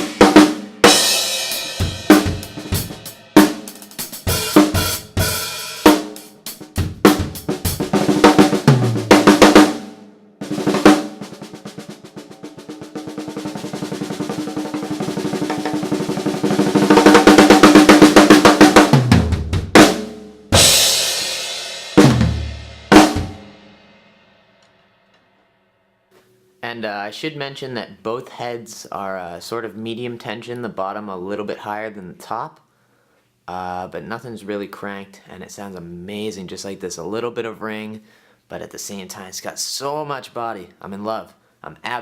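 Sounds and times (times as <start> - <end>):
bass drum: 0.0 - 21.2, 22.0 - 23.6
snare drum roll: 0.0 - 23.6
snare drum strokes and fills: 0.0 - 23.7.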